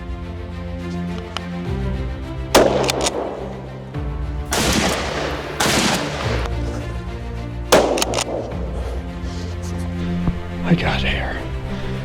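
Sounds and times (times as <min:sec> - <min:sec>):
background music with low notes: 0:00.0 - 0:12.0
rifle shot: 0:02.6 - 0:03.8, 0:04.5 - 0:06.8, 0:07.7 - 0:09.0.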